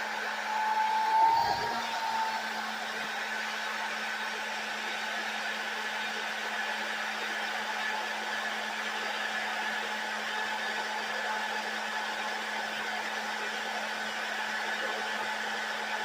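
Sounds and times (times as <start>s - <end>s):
hair dryer blowing: 0.0s - 7.0s.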